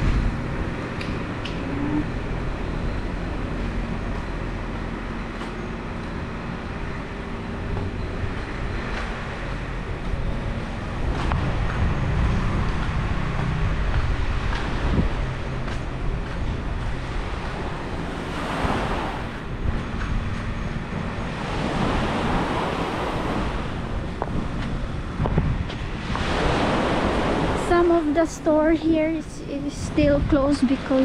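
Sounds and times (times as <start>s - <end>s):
wind rumbling on microphone: 0.0s - 31.0s
sea waves washing onto beach: 11.0s - 20.0s, 21.0s - 29.1s.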